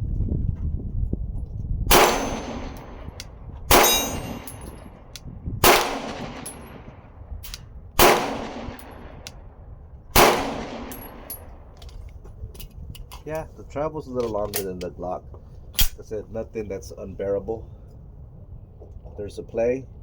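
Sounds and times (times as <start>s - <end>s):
pistol shots: 1.9s - 4.8s, 5.6s - 6.9s, 8.0s - 9.4s, 10.2s - 11.5s
steel target clanging: 3.7s - 4.9s.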